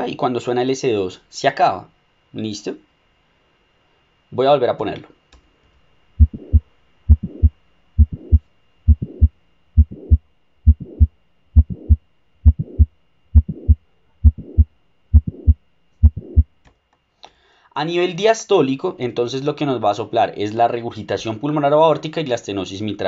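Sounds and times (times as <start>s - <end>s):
heart click: 6.2s - 16.6s
heart murmur: 6.2s - 16.6s
heartbeat: 6.2s - 16.6s.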